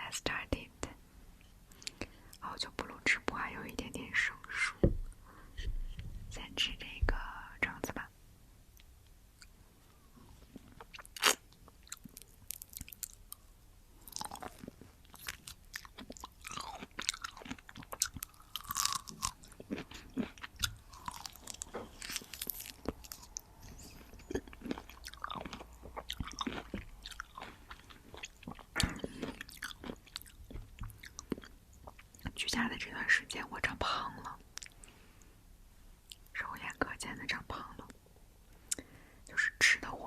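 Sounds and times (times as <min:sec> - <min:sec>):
chewing juicy orange: 0:10.5 - 0:32.4.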